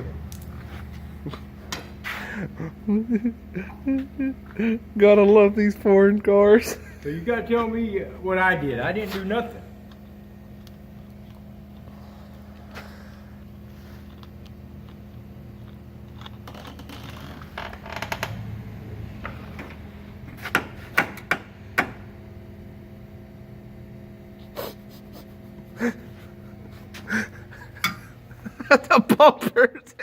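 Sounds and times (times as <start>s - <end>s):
low electrical hum: 0.0s - 30.0s
tool tapping car metal: 20.3s - 22.1s.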